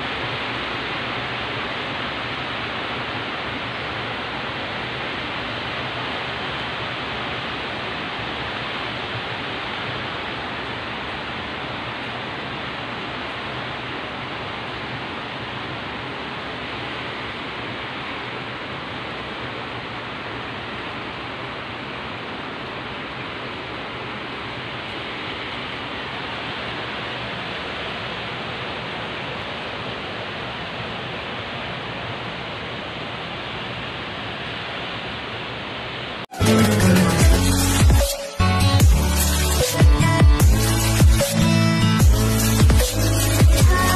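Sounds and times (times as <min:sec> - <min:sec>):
heavy rain falling: 0:00.0 - 0:38.1
electronic music with heavy beat: 0:36.3 - 0:43.9.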